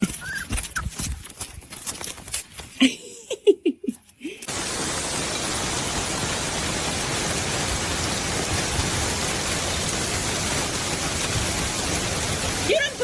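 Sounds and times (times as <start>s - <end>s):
steady hiss: 4.2s - 13.0s.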